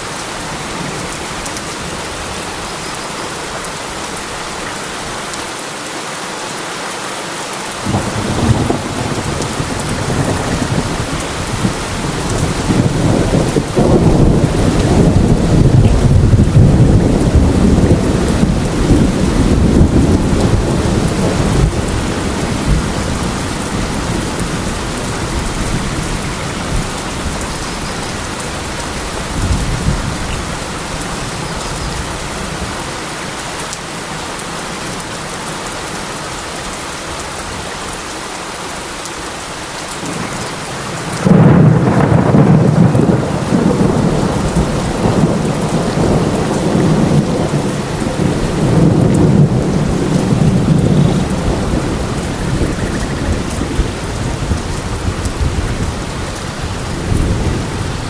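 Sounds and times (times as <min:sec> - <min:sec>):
heavy rain: 0:00.0 - 0:58.0
loud thunderclap: 0:07.8 - 0:27.4, 0:40.1 - 0:56.1
thunder rumbling: 0:07.8 - 0:32.8, 0:40.0 - 0:58.0.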